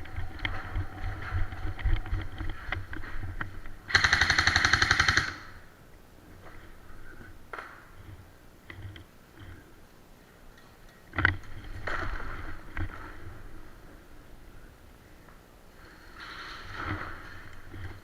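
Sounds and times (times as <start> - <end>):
airsoft gun full-auto burst: 3.9 - 5.6.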